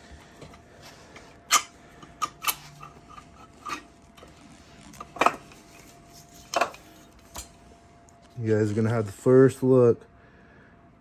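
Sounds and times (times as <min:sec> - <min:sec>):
metal engine parts clinking: 0:01.5 - 0:03.8.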